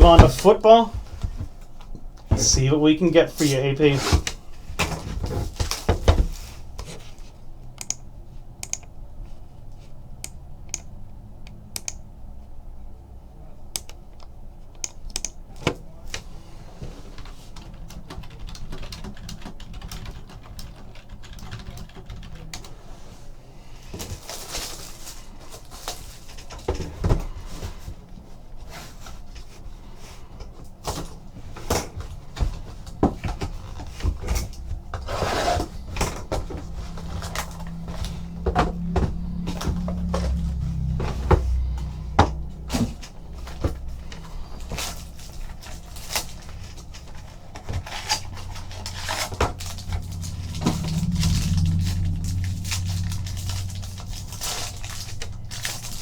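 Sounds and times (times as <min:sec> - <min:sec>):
sharp clicks and taps: 0:08.6 - 0:08.9, 0:11.8 - 0:12.0, 0:14.8 - 0:15.4.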